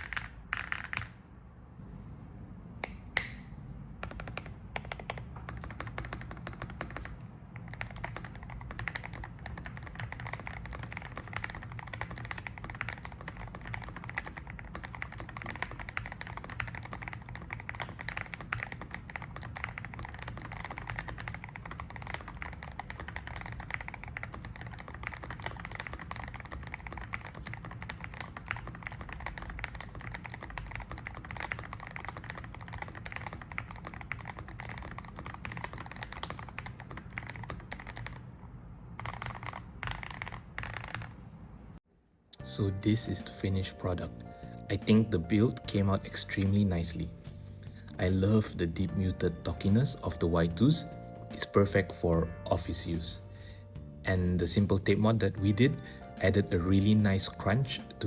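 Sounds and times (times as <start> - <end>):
mechanical keyboard typing: 0.0 - 1.2, 4.0 - 41.2, 54.1 - 58.0.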